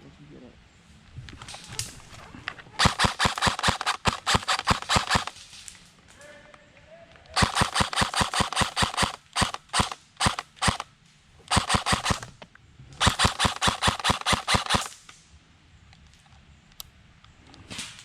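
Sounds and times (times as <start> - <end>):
airsoft gun firing rapid shots: 2.8 - 5.4, 7.4 - 10.9, 11.5 - 12.3, 13.0 - 15.0.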